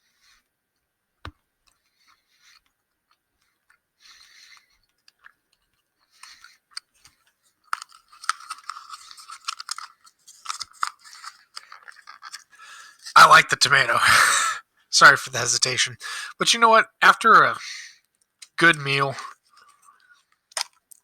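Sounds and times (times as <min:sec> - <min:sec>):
wet mouth chewing candy: 0:02.0 - 0:13.2.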